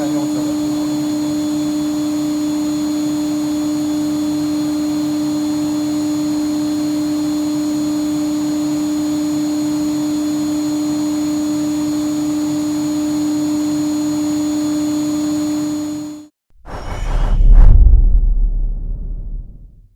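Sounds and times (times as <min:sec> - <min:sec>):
high whining tones: 0:16.6 - 0:19.8.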